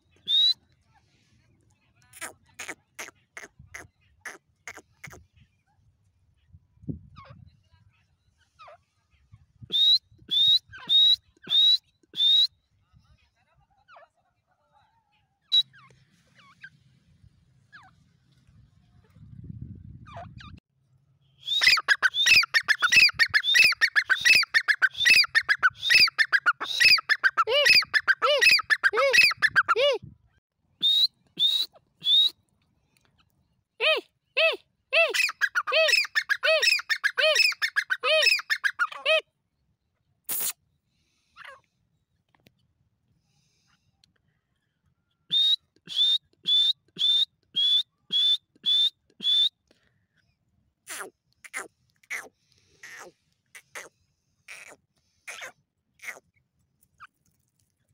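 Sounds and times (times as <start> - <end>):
francolin whistled calls: 21.4 - 29.7, 45.3 - 49.6.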